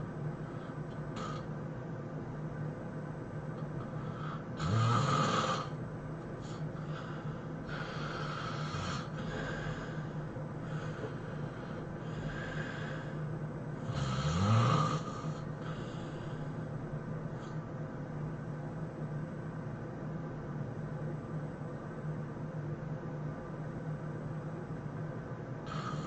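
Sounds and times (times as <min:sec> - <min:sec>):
soft breathing: 0:00.3 - 0:01.7, 0:03.6 - 0:04.8, 0:06.4 - 0:14.0, 0:14.9 - 0:17.8
person snoring heavily: 0:00.4 - 0:01.5, 0:03.8 - 0:05.8, 0:06.4 - 0:13.2, 0:13.8 - 0:16.5, 0:25.6 - 0:26.0.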